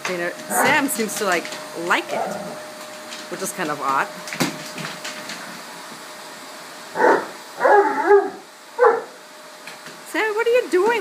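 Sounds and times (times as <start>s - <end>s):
dog barking: 7.0s - 9.2s.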